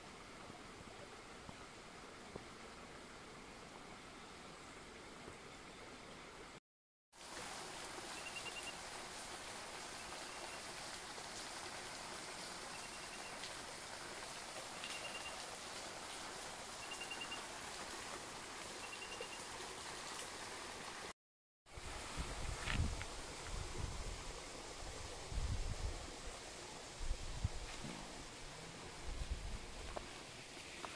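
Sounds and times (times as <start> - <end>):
mountain stream rushing: 7.2 - 30.9.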